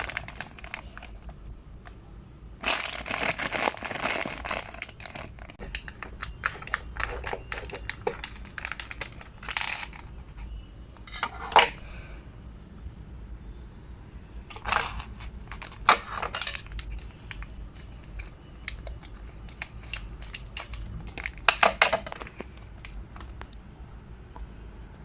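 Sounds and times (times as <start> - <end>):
packaging crinkling: 0.0 - 1.3, 2.6 - 10.2, 14.5 - 23.5.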